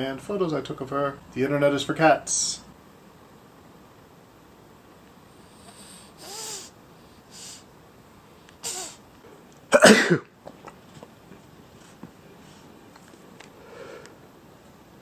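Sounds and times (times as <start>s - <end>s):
cat sneezing: 6.2s - 6.7s, 8.6s - 9.0s.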